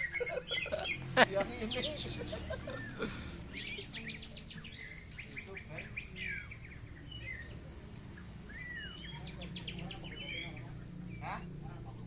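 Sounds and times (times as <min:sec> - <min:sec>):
songbird chirping and whistling: 0:08.5 - 0:10.7.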